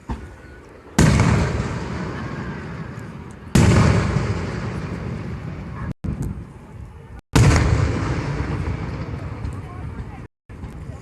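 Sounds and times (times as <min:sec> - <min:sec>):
loud gunpowder blasts echoing: 0:01.0 - 0:05.9, 0:07.4 - 0:10.3.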